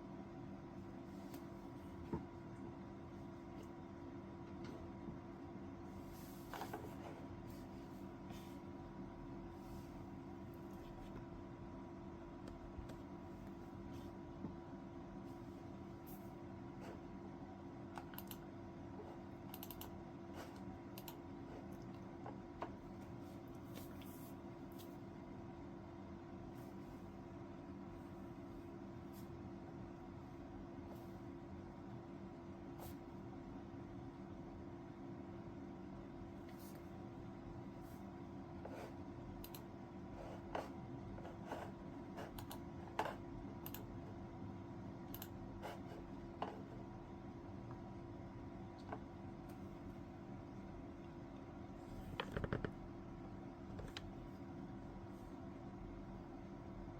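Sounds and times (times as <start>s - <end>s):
steady low hum: 0.0s - 56.9s
light irregular clicks and taps: 19.5s - 19.9s, 42.4s - 43.9s.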